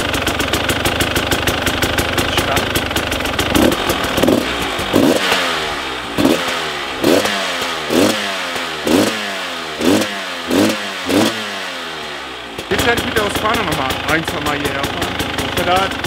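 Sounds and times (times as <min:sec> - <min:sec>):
motorcycle engine revving: 0:00.0 - 0:16.0.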